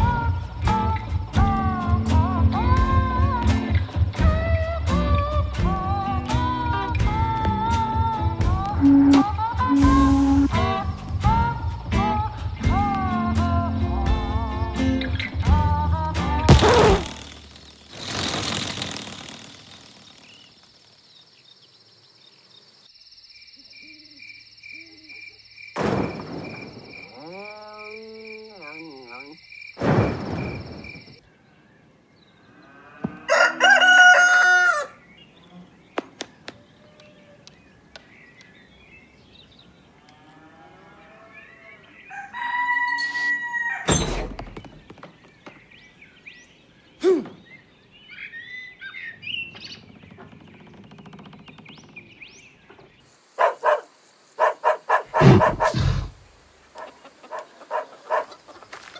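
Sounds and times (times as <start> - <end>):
chicken calls: 32.6 - 40.0, 41.2 - 43.9, 53.0 - 58.9
rooster crowing: 33.0 - 35.0, 41.7 - 44.0.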